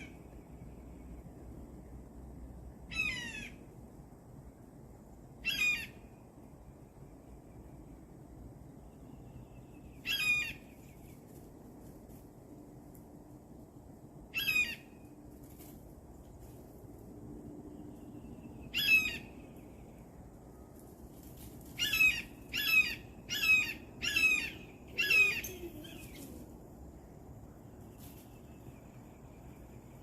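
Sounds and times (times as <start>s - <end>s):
bird giving harsh calls: 21.8s - 26.1s.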